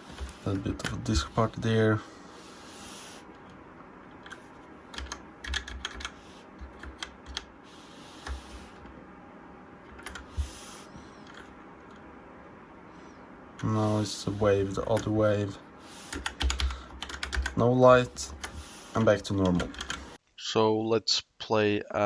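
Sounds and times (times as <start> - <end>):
mechanical keyboard keys clicking: 4.2 - 7.5, 16.1 - 17.6, 19.3 - 20.1.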